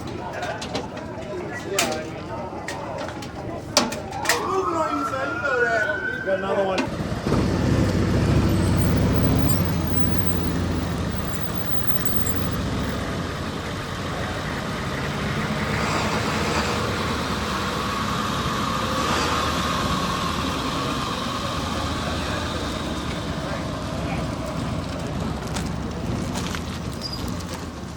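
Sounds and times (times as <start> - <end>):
traffic rumble: 0.0 - 27.9
vehicle engine running: 7.3 - 15.6.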